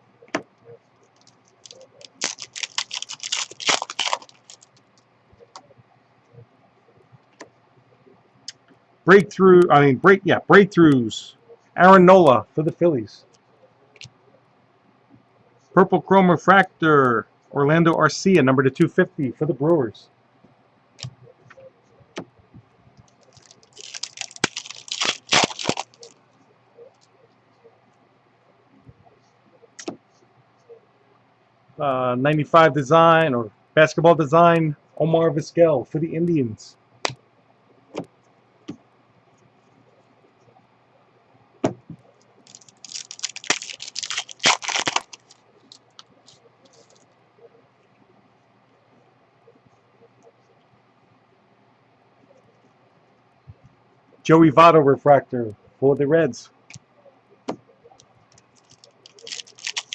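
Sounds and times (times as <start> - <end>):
packaging rustling and crinkling: 1.2 - 4.8, 23.1 - 26.2, 42.4 - 47.1, 58.3 - 59.9
cards clicking: 29.8 - 30.0.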